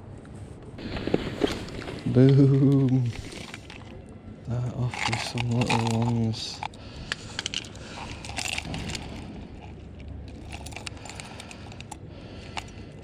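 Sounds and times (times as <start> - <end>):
low background rumble: 0.0 - 13.0
fishing tackle clicking and rattling: 2.6 - 13.0.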